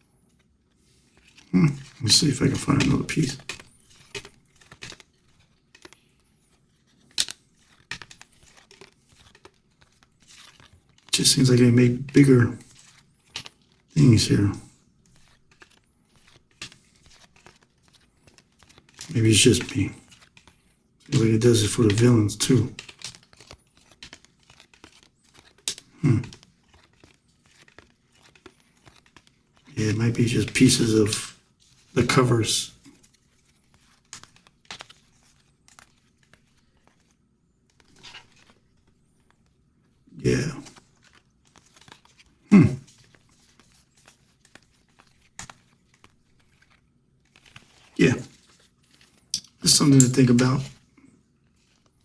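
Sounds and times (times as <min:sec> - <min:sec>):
crackling rustle: 0:00.2 - 0:52.0
cards clicking and scraping: 0:00.8 - 0:39.5, 0:40.2 - 0:50.9, 0:51.5 - 0:51.9
person murmuring: 0:01.5 - 0:03.4, 0:11.2 - 0:12.6, 0:14.0 - 0:14.7, 0:19.1 - 0:20.0, 0:21.1 - 0:22.8, 0:26.0 - 0:26.4, 0:29.7 - 0:31.3, 0:32.0 - 0:32.8, 0:40.2 - 0:40.7, 0:42.5 - 0:42.9, 0:48.0 - 0:48.3, 0:49.6 - 0:50.7.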